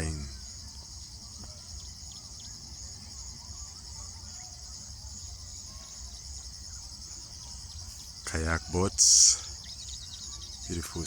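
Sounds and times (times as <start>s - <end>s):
insects trilling: 0.0s - 11.0s.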